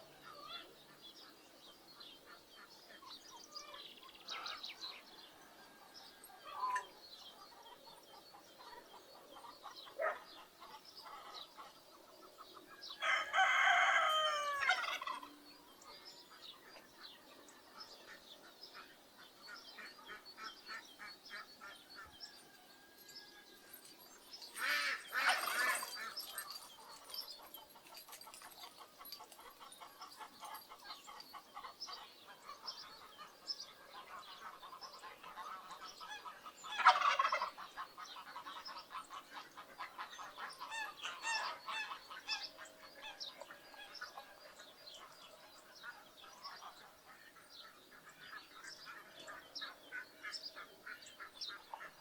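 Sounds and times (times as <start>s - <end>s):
poultry flock calling: 13.0s - 15.4s, 23.8s - 33.4s, 34.0s - 52.0s.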